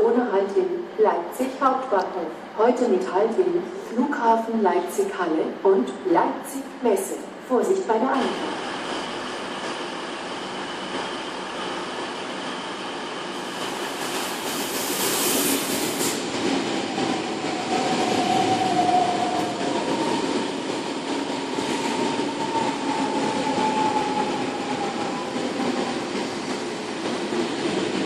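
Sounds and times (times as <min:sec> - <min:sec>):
train rolling in: 0:08.2 - 0:28.0.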